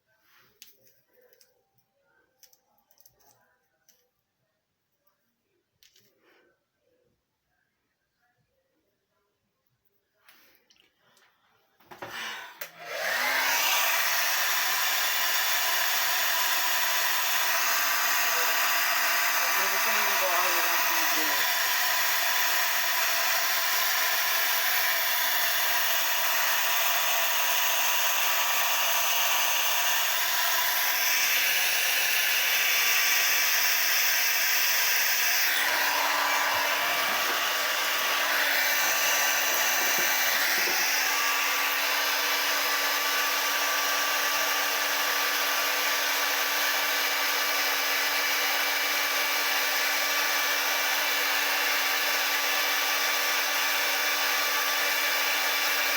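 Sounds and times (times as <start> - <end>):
hair dryer blowing: 11.9 - 55.9.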